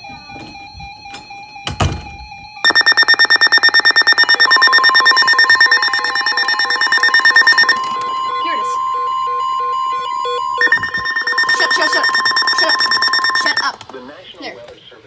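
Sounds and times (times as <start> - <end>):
rapid alarm beeping: 2.6 - 13.9
steady warning tone: 2.7 - 13.9.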